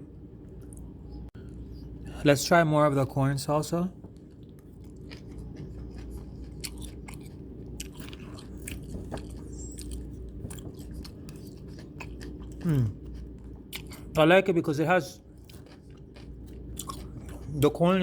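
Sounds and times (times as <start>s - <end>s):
person chewing food: 4.0s - 14.2s, 15.2s - 17.8s
person humming mm: 12.6s - 13.0s.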